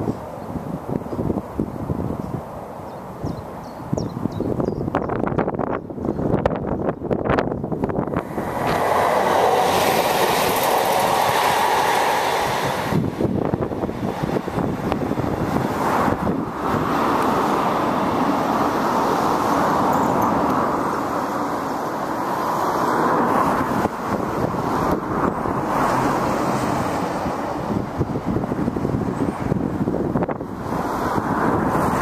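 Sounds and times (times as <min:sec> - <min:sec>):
wind buffeting microphone: 0:00.0 - 0:32.0
train rushing past: 0:08.0 - 0:29.8.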